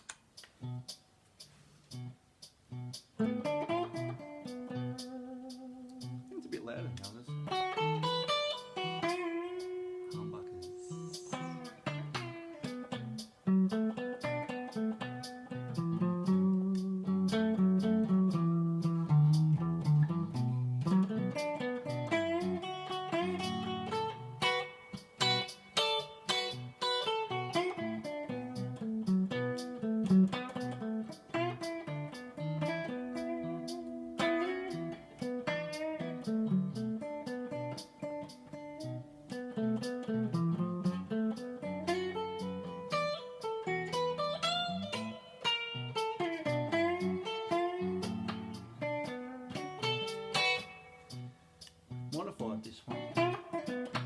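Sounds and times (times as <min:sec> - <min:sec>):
electric guitar playing: 0:00.3 - 0:52.2, 0:52.8 - 0:54.0.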